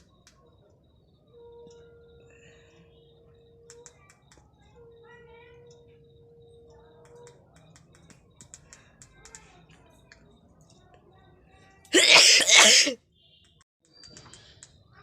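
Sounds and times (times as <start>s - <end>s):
person sneezing: 12.0s - 13.0s.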